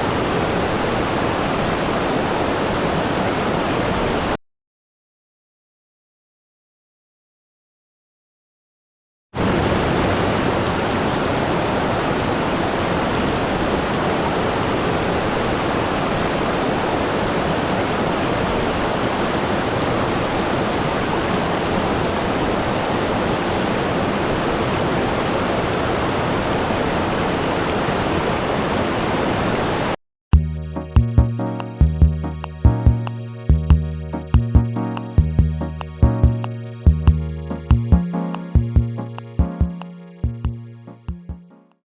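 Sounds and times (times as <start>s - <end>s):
steady rushing hiss: 30.4s - 41.1s.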